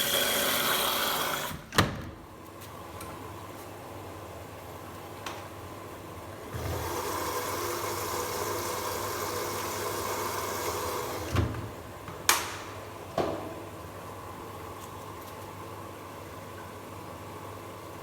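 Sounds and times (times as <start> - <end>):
washing machine running: 0.0 - 1.7, 4.1 - 12.2.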